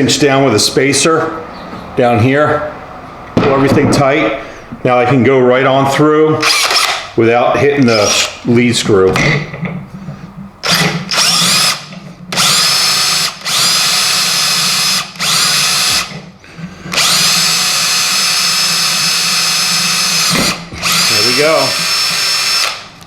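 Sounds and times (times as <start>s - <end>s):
power drill boring through steel: 6.4s - 7.0s, 10.6s - 16.2s, 16.9s - 22.8s.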